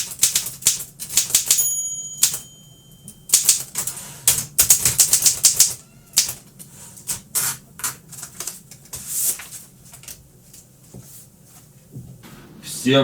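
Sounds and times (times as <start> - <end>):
typewriter keys striking: 0.0 - 1.6, 2.2 - 2.4, 3.3 - 6.4.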